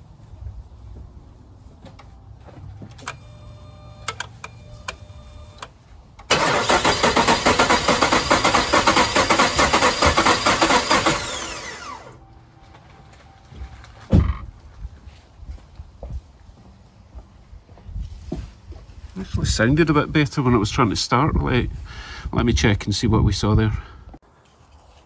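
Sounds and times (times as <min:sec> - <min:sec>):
engine cranking without starting: 0:03.0 - 0:12.2
starter winding down: 0:06.3 - 0:12.2.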